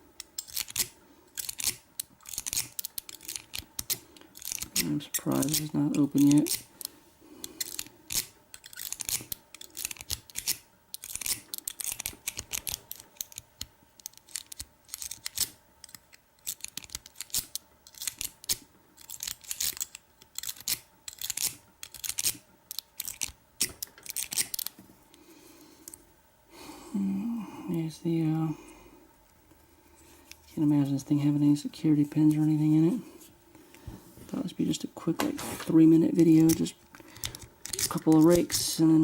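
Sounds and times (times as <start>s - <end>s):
lock pick clicking and scraping: 0.3s - 4.8s, 7.6s - 13.4s, 14.0s - 24.7s.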